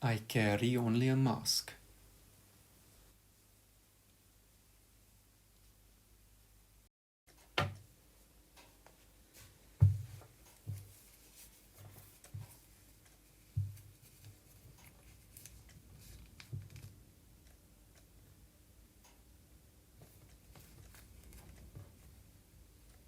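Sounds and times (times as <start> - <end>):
soft knocks and taps: 9.8 - 11.1, 13.5 - 14.4.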